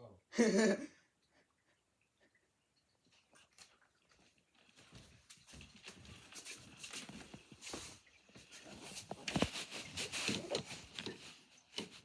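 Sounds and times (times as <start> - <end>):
knocks and rustling: 5.0 - 12.0.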